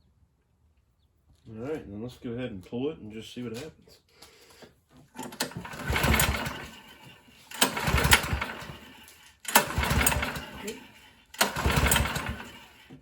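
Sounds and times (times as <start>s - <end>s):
engine cranking without starting: 5.1s - 13.0s
recoil starter pulled: 5.1s - 13.0s.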